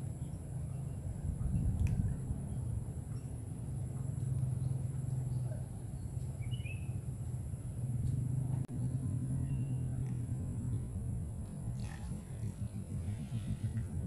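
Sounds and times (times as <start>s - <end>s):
low hum: 0.0s - 14.0s
bird chirp: 4.0s - 7.1s, 9.4s - 10.1s.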